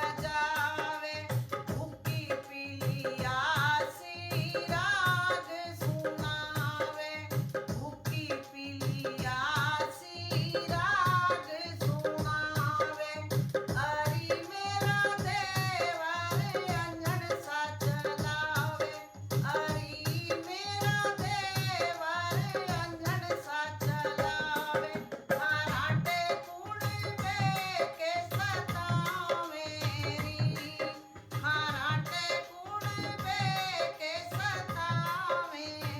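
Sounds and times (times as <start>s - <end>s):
hand drum beat: 0.0s - 35.9s
woman singing a folk song: 0.0s - 35.9s.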